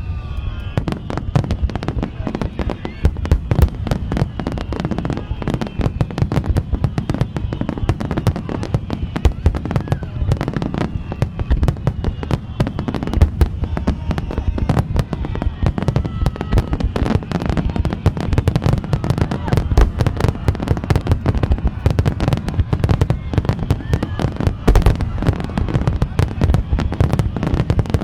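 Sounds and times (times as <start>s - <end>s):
fireworks bursting: 0.0s - 28.0s.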